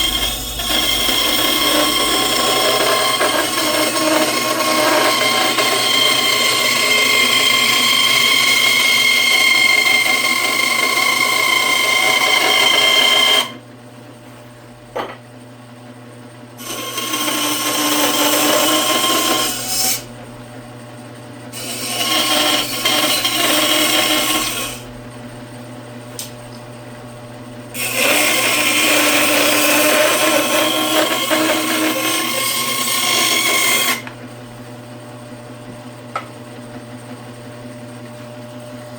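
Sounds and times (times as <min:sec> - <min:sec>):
power tool cutting wood: 0:00.0 - 0:13.6, 0:16.6 - 0:20.1, 0:21.5 - 0:24.9, 0:27.7 - 0:34.2.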